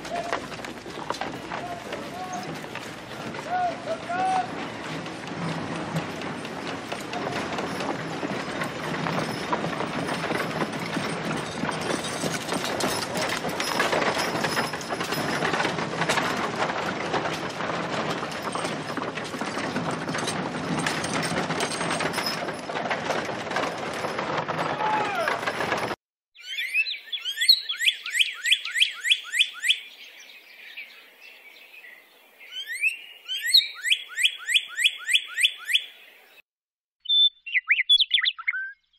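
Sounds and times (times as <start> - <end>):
clattering knocks and rattles: 0.0 - 26.0
low murmur of activity: 0.0 - 26.0.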